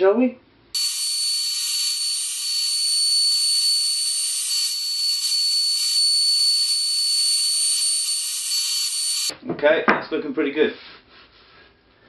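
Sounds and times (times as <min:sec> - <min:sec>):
router bit cutting wood: 0:00.8 - 0:09.3
router motor whining: 0:00.8 - 0:09.3.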